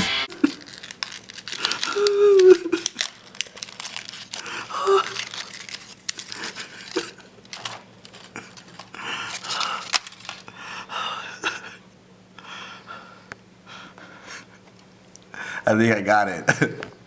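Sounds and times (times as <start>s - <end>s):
foil wrappers crinkling and tearing: 0.3s - 10.8s.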